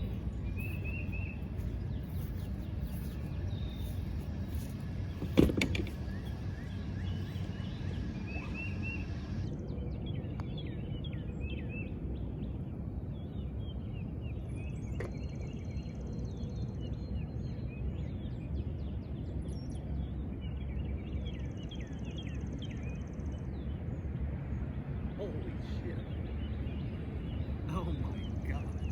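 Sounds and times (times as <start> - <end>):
open-air rumble: 0.0 - 28.9
small birds chirping: 0.0 - 28.9
golf club striking ball: 5.1 - 6.3.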